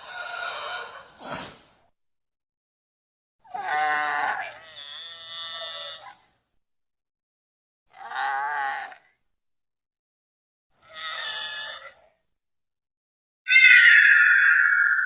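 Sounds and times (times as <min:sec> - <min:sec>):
harsh creature calls: 0:13.5 - 0:15.0.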